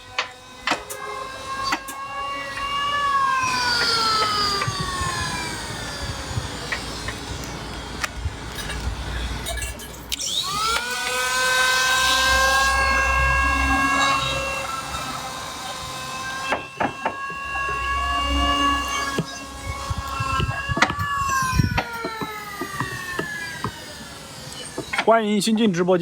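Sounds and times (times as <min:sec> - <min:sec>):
power tool motor whining: 0:00.0 - 0:25.5.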